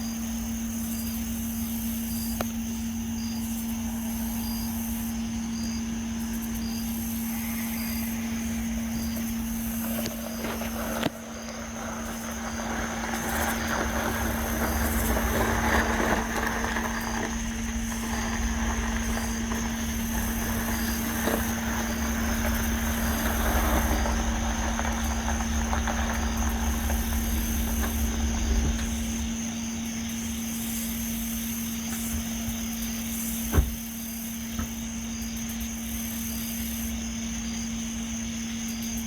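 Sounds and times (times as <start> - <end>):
low rumble: 7.4 - 30.4.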